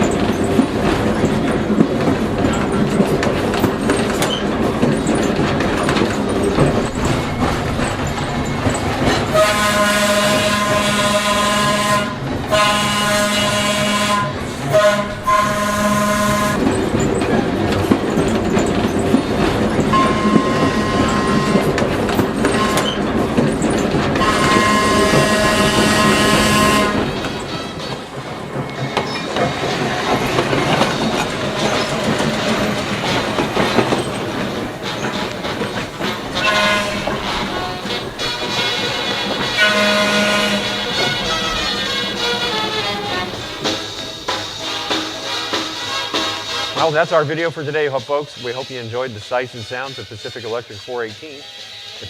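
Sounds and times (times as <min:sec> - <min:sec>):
streetcar rolling on track: 0:00.0 - 0:52.0
streetcar horn blasts: 0:09.2 - 0:16.8, 0:19.9 - 0:23.2, 0:24.2 - 0:28.7, 0:29.4 - 0:47.0.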